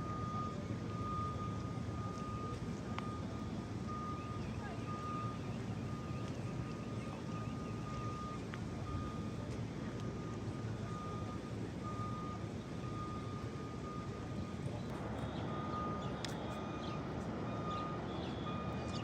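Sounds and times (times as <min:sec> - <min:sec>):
backup alarm beeping: 0:00.0 - 0:09.4
low rumble of traffic: 0:00.0 - 0:19.0.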